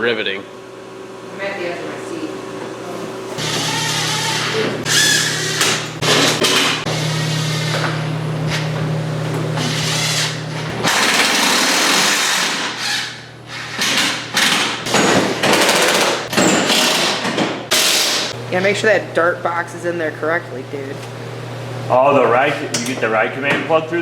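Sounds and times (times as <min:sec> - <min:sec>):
power tool driving fasteners: 0:03.4 - 0:08.7, 0:09.6 - 0:18.3.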